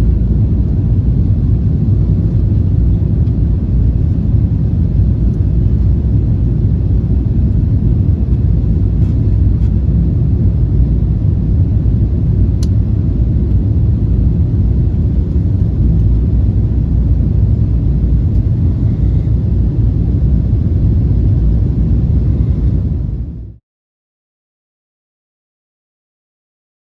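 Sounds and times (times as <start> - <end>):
airliner cabin rumble: 0.0 - 23.6.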